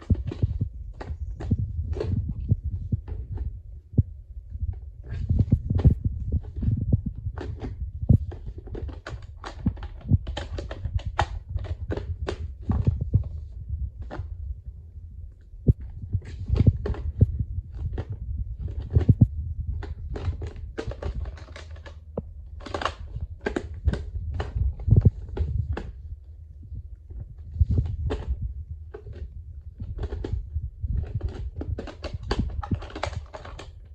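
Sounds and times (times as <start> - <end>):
microphone handling rumble: 0.0 - 33.9
plastic cases clicking: 7.3 - 13.0, 15.7 - 26.0, 27.6 - 33.9.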